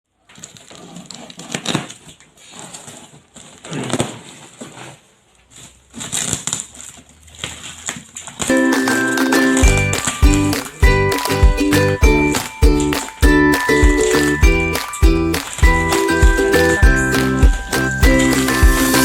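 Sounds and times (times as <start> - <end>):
packaging crinkling and rustling: 0.1 - 17.3.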